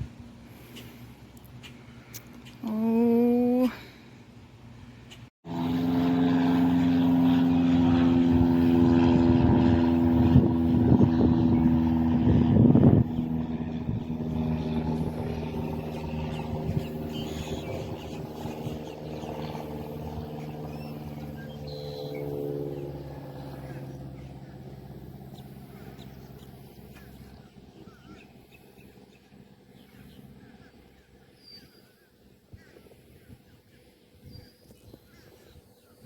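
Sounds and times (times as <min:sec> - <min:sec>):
droning engine hum: 0:00.0 - 0:36.0.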